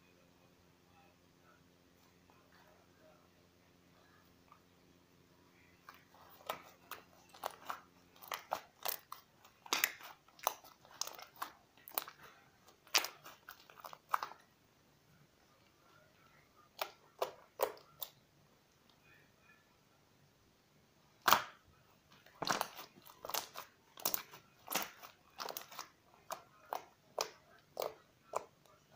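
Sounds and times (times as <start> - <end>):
slime crackling and popping: 5.9 - 14.5, 16.7 - 18.2, 21.2 - 21.6, 22.3 - 28.6.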